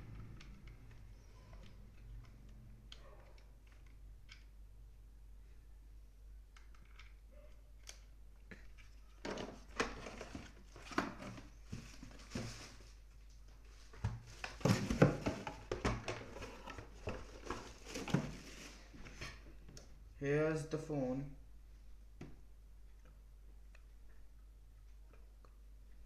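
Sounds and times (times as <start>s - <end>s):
packaging rustling and crinkling: 8.7s - 19.4s.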